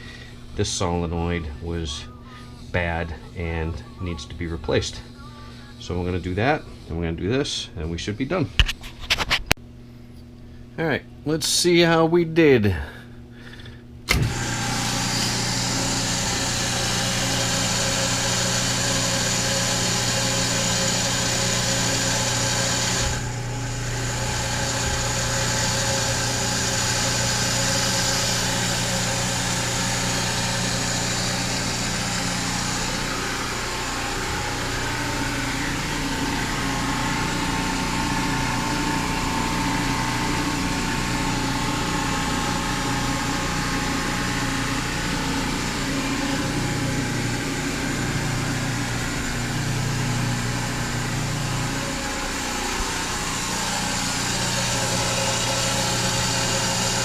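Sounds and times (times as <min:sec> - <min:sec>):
pump motor humming: 0:13.5 - 0:57.0.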